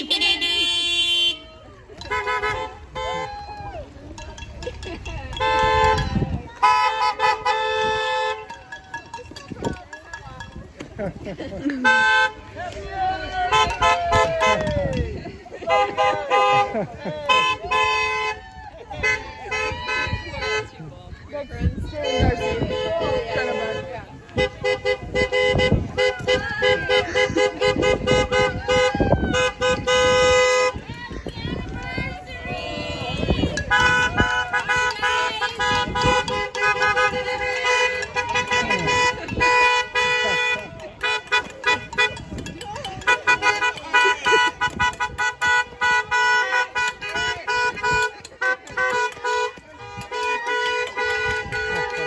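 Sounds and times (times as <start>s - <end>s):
car horn short toots: 0.0s - 3.3s, 5.3s - 8.6s, 11.8s - 12.4s, 33.6s - 52.0s.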